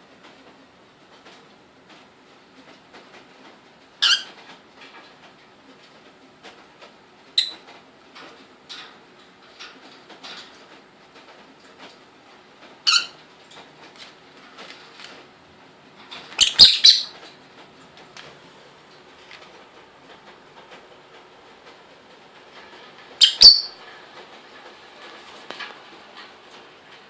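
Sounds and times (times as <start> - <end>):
bird chirp: 7.4 - 7.6, 16.4 - 17.2, 23.2 - 23.8.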